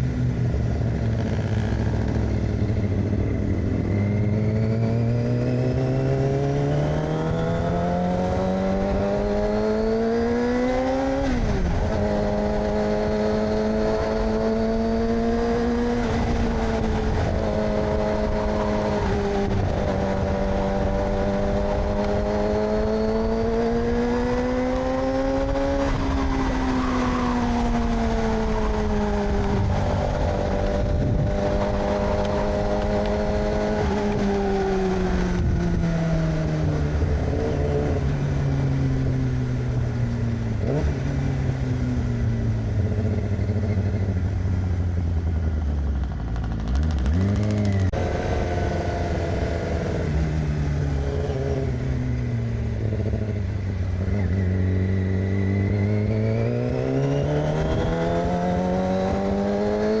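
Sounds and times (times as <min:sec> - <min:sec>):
motorcycle engine: 0:00.0 - 1:00.0
wind rush: 0:11.2 - 0:42.7.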